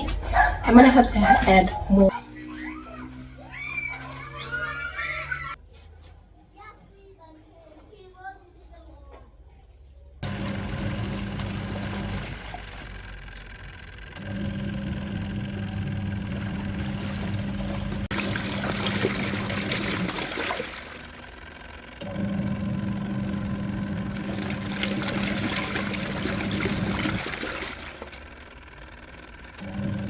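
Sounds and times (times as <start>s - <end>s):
washing machine motor humming: 0.0s - 5.6s, 10.2s - 30.0s
water churning: 10.2s - 13.3s, 14.2s - 30.0s.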